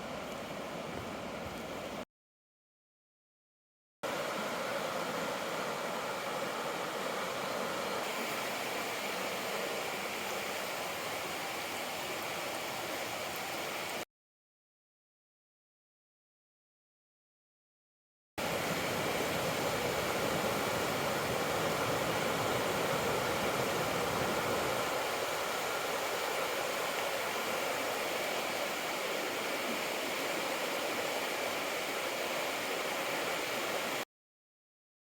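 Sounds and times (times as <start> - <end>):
river water rushing over rocks: 4.1 - 14.0, 18.4 - 34.0.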